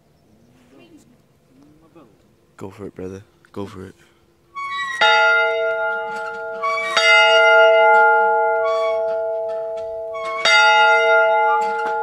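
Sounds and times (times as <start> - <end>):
large bell ringing: 4.7 - 12.0.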